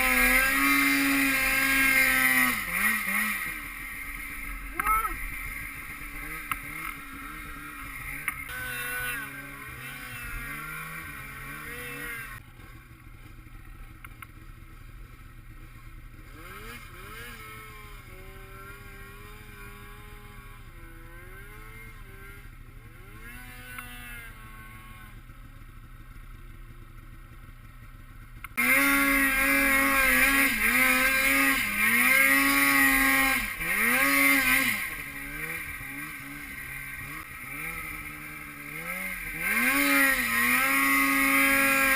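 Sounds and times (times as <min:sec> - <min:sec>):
snowmobile engines revving: 0:00.0 - 0:13.0, 0:15.7 - 0:25.2, 0:28.6 - 0:41.9.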